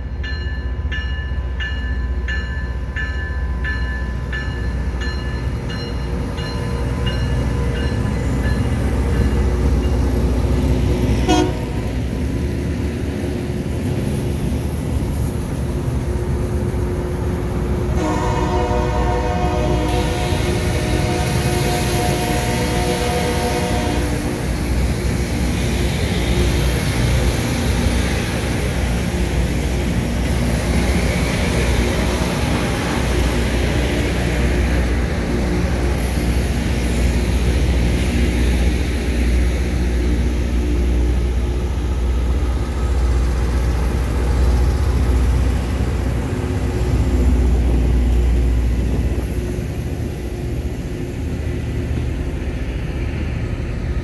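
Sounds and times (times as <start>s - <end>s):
train roaring past: 0.0s - 54.0s
train horn: 11.2s - 11.8s, 17.9s - 24.4s.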